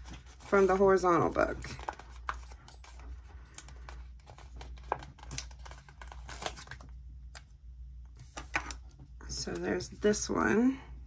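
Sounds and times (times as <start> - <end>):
paper rustling and crinkling: 0.0 - 6.9.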